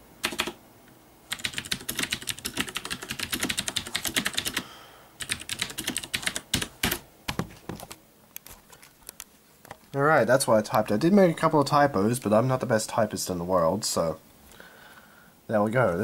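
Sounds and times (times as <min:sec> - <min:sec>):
fast mechanical keyboard typing: 0:00.2 - 0:00.6, 0:01.3 - 0:04.6, 0:05.2 - 0:07.5.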